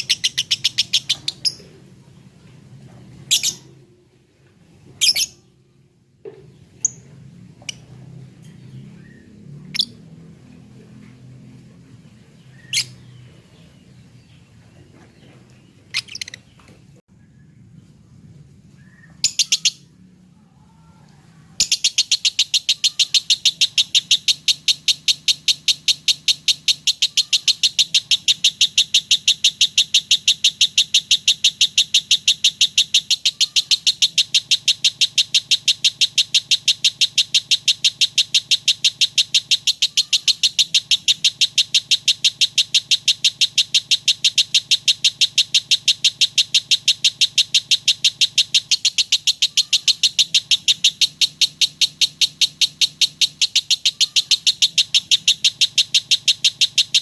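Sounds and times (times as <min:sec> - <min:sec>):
lovebird chattering high chirps: 0:00.0 - 0:01.7, 0:03.3 - 0:03.7, 0:05.0 - 0:05.5, 0:12.4 - 0:13.2, 0:15.9 - 0:16.5, 0:19.2 - 0:19.9, 0:21.6 - 0:57.0.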